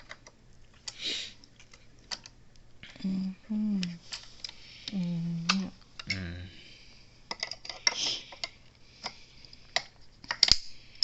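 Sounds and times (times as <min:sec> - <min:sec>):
person humming: 0:02.9 - 0:04.0, 0:04.9 - 0:06.7.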